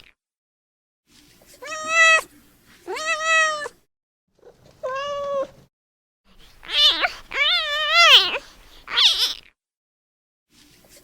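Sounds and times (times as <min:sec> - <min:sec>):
kitten meowing: 0:01.6 - 0:02.3, 0:02.9 - 0:03.8, 0:04.6 - 0:05.6, 0:06.6 - 0:09.4.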